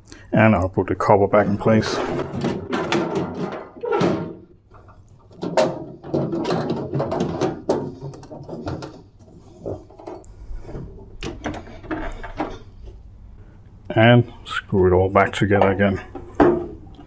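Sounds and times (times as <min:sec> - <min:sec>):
metal scraping and rattling: 0:01.3 - 0:13.0
sheet metal cover clanking: 0:01.4 - 0:12.8, 0:15.4 - 0:17.0.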